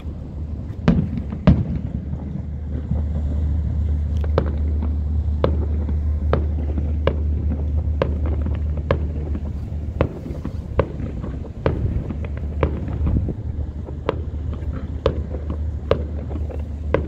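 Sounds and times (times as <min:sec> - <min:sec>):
low rumble: 0:00.0 - 0:17.0
firework shells bursting: 0:00.8 - 0:17.0.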